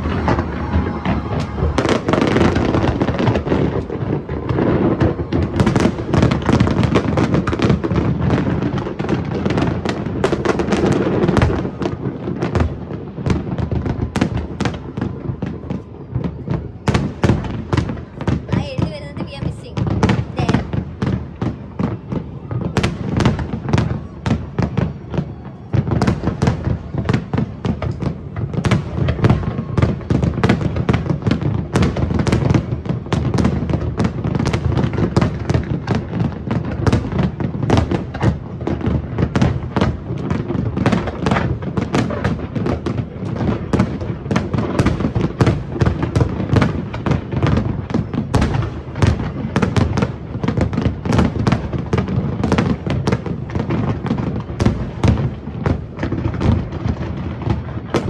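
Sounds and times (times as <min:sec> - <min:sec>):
fireworks bursts and crackling: 0:00.0 - 0:58.0.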